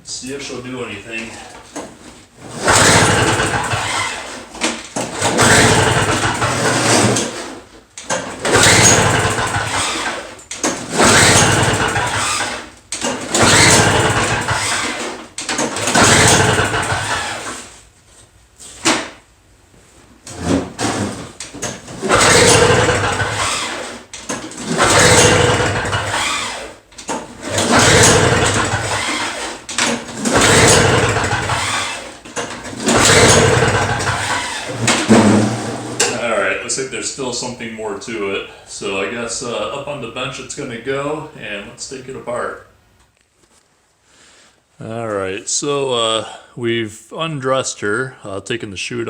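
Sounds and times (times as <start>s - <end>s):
snow blower engine pull-started: 1.2s - 17.8s, 20.3s - 37.5s.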